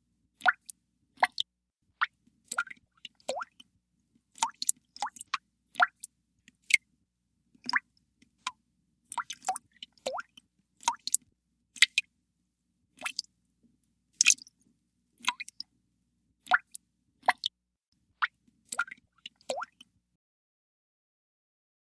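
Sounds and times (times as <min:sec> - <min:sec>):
water drops plinking into water: 0:00.4 - 0:03.6, 0:04.4 - 0:06.1, 0:07.6 - 0:07.9, 0:08.5 - 0:11.2, 0:13.0 - 0:13.3, 0:14.2 - 0:14.5, 0:15.2 - 0:15.7, 0:18.2 - 0:19.9.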